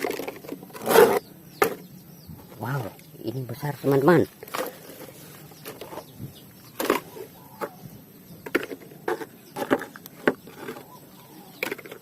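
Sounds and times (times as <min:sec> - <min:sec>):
plastic toys clattering: 0:00.0 - 0:01.8, 0:04.3 - 0:06.1, 0:06.8 - 0:07.8, 0:08.4 - 0:11.0, 0:11.6 - 0:12.0.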